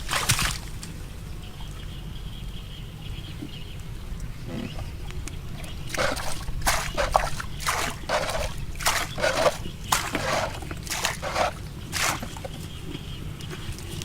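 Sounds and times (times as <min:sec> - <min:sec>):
water splashing and sloshing: 0:00.0 - 0:01.2, 0:04.2 - 0:14.0
steady low rumble: 0:00.0 - 0:13.5.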